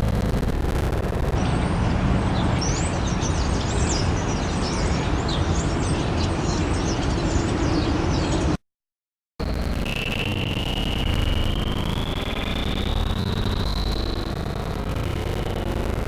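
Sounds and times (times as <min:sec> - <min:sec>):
city traffic rumble: 0:00.0 - 0:08.6.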